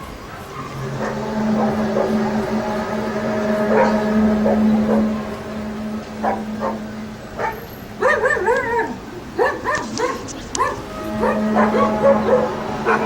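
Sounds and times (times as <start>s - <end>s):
steady low hum: 0.4s - 9.3s, 10.6s - 13.0s
dog barking and yelping: 7.4s - 13.0s.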